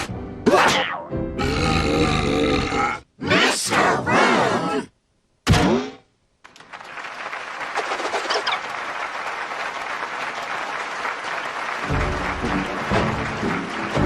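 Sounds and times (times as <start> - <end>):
audience clapping: 6.4 - 14.0.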